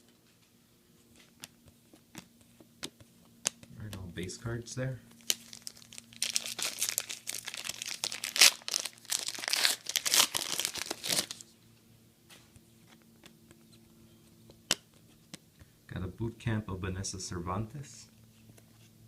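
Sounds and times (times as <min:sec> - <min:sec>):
cards being handled: 0:01.0 - 0:04.1, 0:05.2 - 0:11.5, 0:12.4 - 0:15.7
card pack wrapper tearing: 0:05.2 - 0:11.4.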